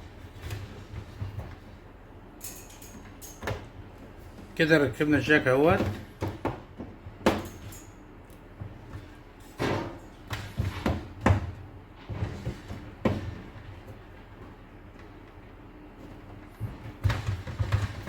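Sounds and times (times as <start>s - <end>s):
knocks and clunks of parts: 16.1s - 18.0s.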